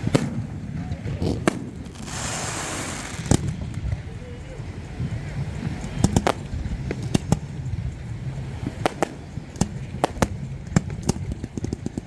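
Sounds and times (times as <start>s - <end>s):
fireworks cracks and pops: 0.0s - 4.0s, 5.8s - 7.5s, 8.7s - 12.0s.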